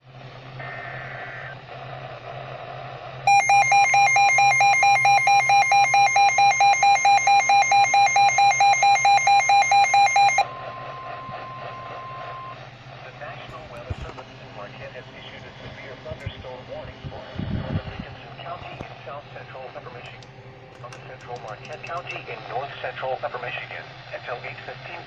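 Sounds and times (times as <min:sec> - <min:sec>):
radio hiss: 0:00.5 - 0:03.2, 0:10.5 - 0:20.2, 0:20.8 - 0:25.0
shrill pulsing beep: 0:03.3 - 0:12.6
steady warning alert tone: 0:03.3 - 0:12.6.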